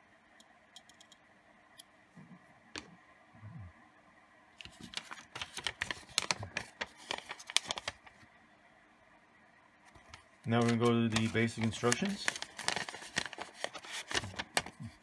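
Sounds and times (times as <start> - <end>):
small clicks and paper rustles: 4.6 - 8.3, 9.9 - 15.0.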